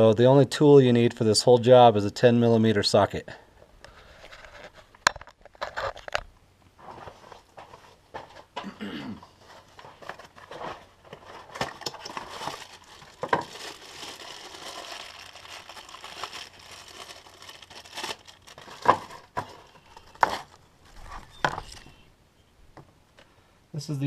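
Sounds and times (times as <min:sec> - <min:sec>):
packaging crinkling and rustling: 0:03.9 - 0:06.2, 0:09.4 - 0:22.0.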